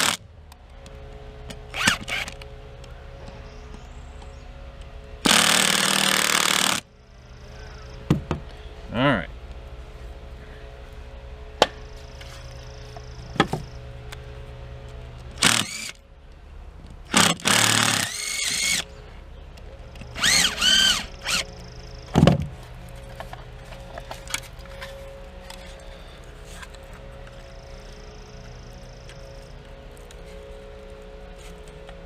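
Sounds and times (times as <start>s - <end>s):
cordless drill driving screws: 0.0s - 0.2s, 1.7s - 2.4s, 5.3s - 6.8s, 15.4s - 16.0s, 17.1s - 18.8s, 20.2s - 21.5s.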